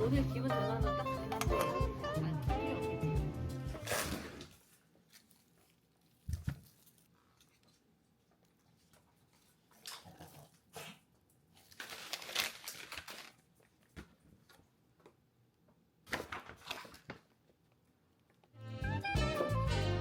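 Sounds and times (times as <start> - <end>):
packaging crinkling and rustling: 11.6 - 14.6.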